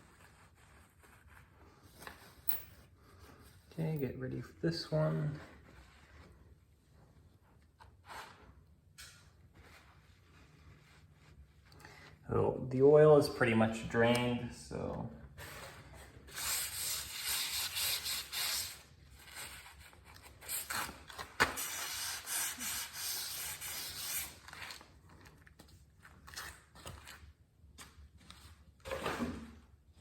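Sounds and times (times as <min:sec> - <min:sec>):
rubbing and scraping handling noise: 0:00.0 - 0:12.3.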